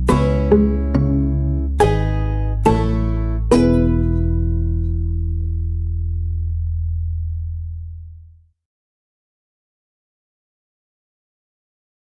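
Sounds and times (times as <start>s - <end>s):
plucked acoustic guitar chords: 0.0s - 7.2s
steady bass: 0.0s - 8.5s.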